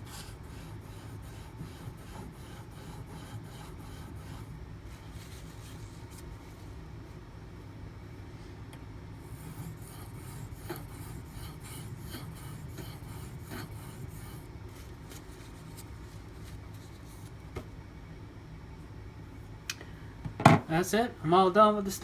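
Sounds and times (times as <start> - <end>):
steady low hum: 0.0 - 22.0
knife scraping on whetstone: 9.3 - 14.5.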